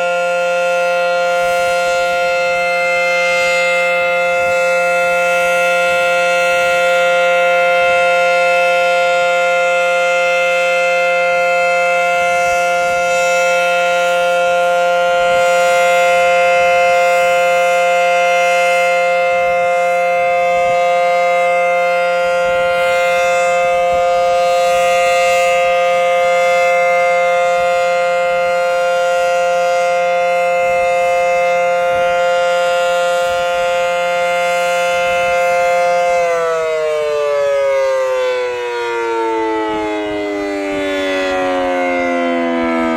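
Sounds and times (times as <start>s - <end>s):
warning siren steady tone: 0.0s - 42.9s.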